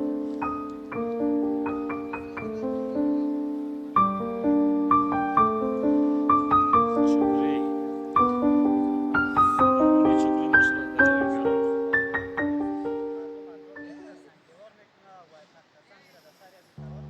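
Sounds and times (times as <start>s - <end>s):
piano notes and chords: 0.0s - 14.3s.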